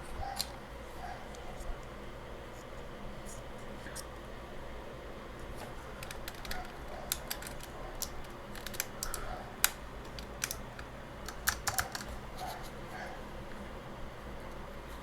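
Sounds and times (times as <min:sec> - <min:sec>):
keycaps clicking onto keyboard: 0:06.0 - 0:12.2.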